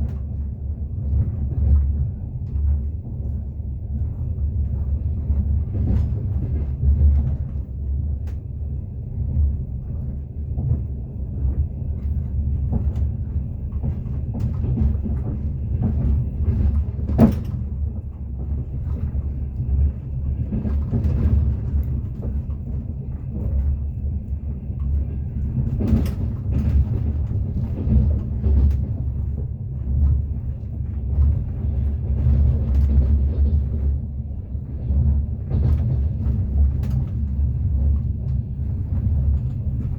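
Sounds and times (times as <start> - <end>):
train rumble inside carriage: 0.0 - 39.9.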